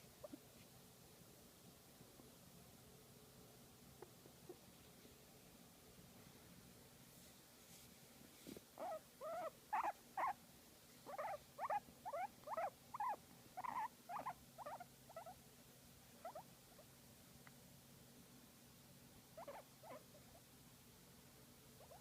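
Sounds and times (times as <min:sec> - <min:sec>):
guinea pig squeaking: 0:08.8 - 0:10.4, 0:11.0 - 0:15.4, 0:16.2 - 0:16.9, 0:19.3 - 0:20.4, 0:21.8 - 0:22.0.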